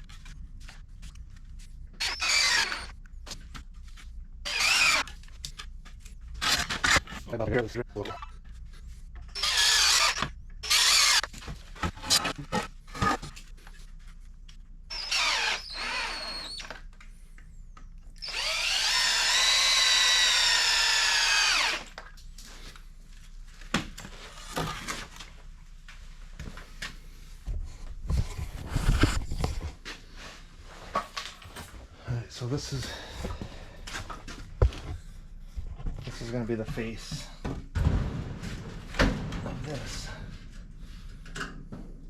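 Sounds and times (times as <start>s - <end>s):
power drill running: 2.0s - 2.9s, 4.4s - 5.1s, 9.3s - 11.3s, 14.9s - 16.8s, 18.2s - 22.0s.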